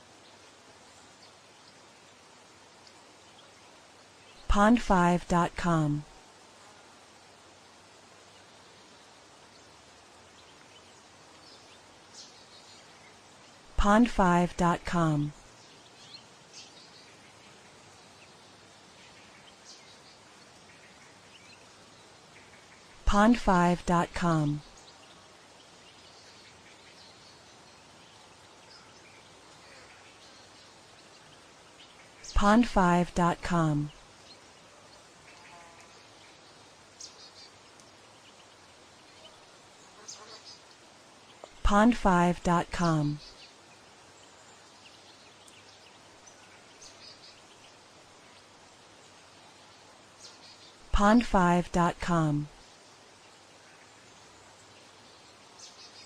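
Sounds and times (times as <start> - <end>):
soft steady hiss: 0.0 - 56.0.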